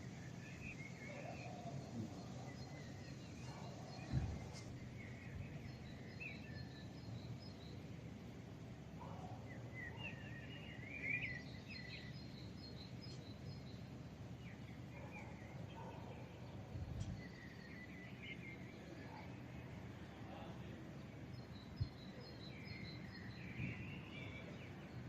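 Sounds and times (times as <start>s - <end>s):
distant city hum: 0.0s - 25.0s
small birds chirping: 0.0s - 25.0s
low thump: 4.0s - 4.4s.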